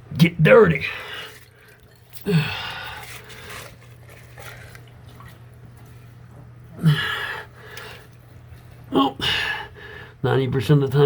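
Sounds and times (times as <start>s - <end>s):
steady low hum: 0.0s - 11.0s
water trickling and dripping: 0.9s - 6.0s.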